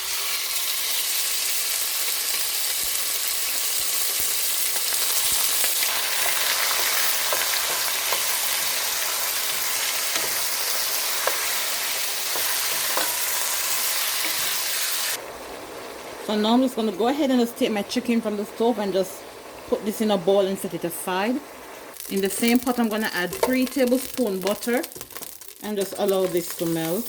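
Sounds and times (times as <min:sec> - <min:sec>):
chicken sizzling in hot oil: 0:00.0 - 0:15.9, 0:21.9 - 0:27.0
oil popping: 0:22.0 - 0:27.0.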